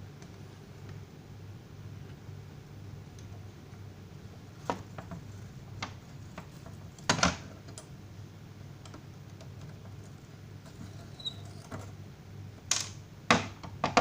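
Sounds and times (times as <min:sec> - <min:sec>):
steady low hum: 0:00.0 - 0:13.9.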